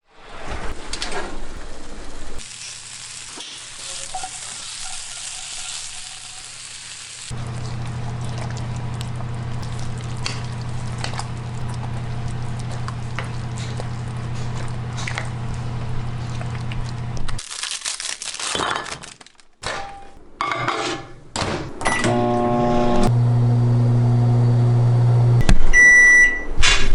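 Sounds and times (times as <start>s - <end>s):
low appliance hum: 6.1s - 17.4s
kitchen clatter and handling: 18.4s - 21.2s.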